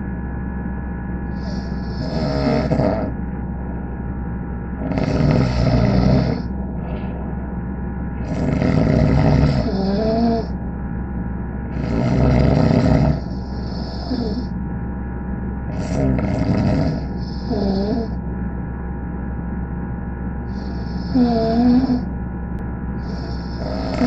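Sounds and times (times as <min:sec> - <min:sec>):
steady electrical hum: 0:00.0 - 0:24.0
person snoring: 0:01.2 - 0:03.2, 0:04.8 - 0:07.4, 0:08.2 - 0:10.5, 0:11.7 - 0:14.5, 0:15.7 - 0:18.2, 0:20.5 - 0:22.1, 0:23.0 - 0:24.0.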